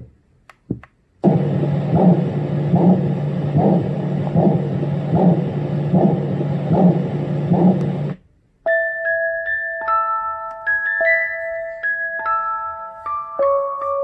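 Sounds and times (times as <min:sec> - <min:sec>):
recorded train rumble: 0:01.2 - 0:08.2.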